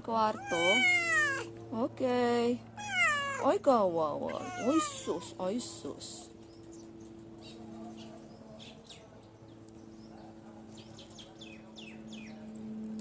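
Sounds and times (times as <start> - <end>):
small birds chirping: 6.4 - 12.4.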